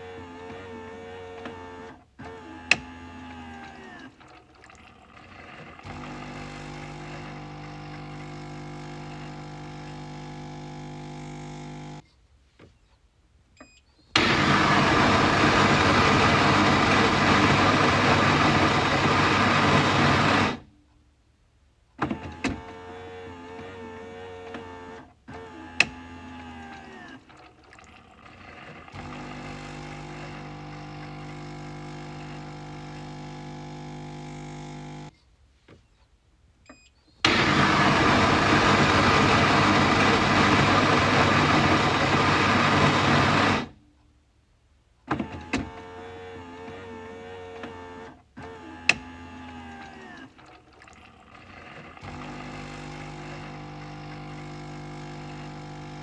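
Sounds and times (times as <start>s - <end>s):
coffee machine motor hum: 4.9s - 12.0s, 14.2s - 20.7s, 27.7s - 35.1s, 37.3s - 43.8s, 50.9s - 56.0s
loud rough noise: 37.3s - 43.7s.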